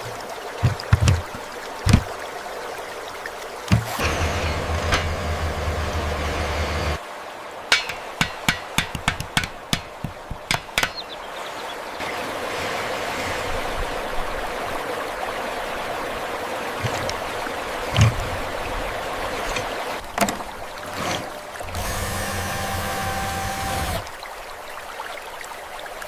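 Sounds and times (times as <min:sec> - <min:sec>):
dull thump: 0:00.0 - 0:02.1, 0:07.7 - 0:11.1
sharp knocks: 0:00.0 - 0:02.1, 0:07.7 - 0:11.2
running water: 0:00.0 - 0:26.0.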